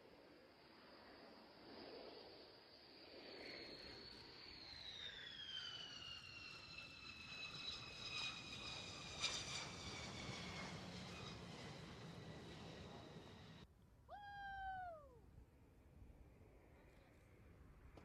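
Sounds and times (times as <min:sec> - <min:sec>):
jet turbine whine falling in pitch: 0:01.1 - 0:13.7.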